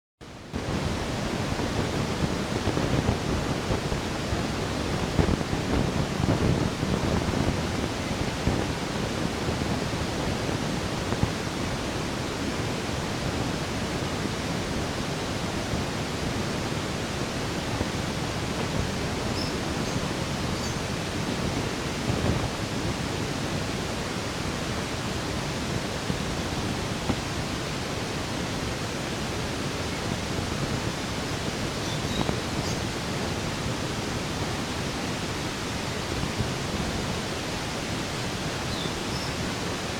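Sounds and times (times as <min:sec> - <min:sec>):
steady background hiss: 0:00.2 - 0:39.9.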